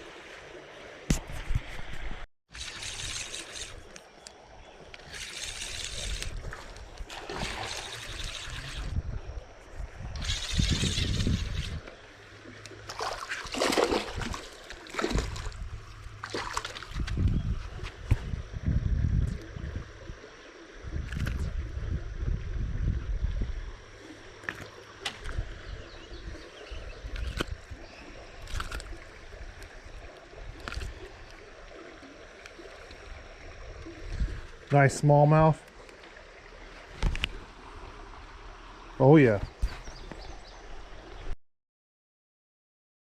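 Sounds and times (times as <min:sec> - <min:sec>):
creek water splashing: 0:00.0 - 0:18.4, 0:23.7 - 0:41.3.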